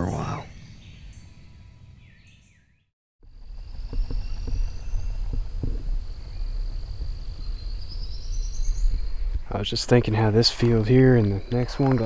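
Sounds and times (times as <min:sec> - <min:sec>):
wind rumble on microphone: 0:03.3 - 0:12.0
high-pitched insect trill: 0:03.6 - 0:12.0.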